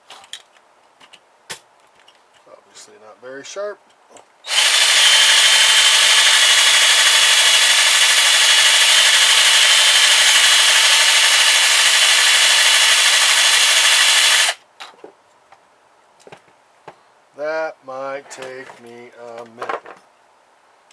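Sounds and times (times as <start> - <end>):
power tool grinding metal screw: 4.5 - 14.6.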